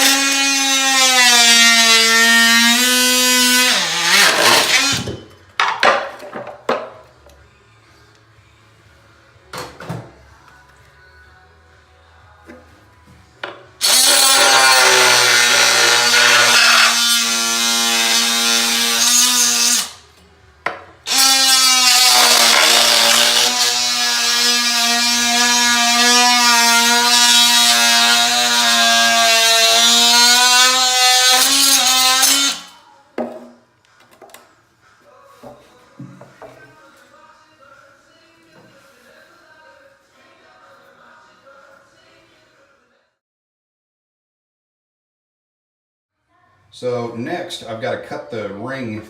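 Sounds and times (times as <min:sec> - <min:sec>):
oscillating multi-tool cutting plastic: 0:13.8 - 0:20.0, 0:21.1 - 0:32.8.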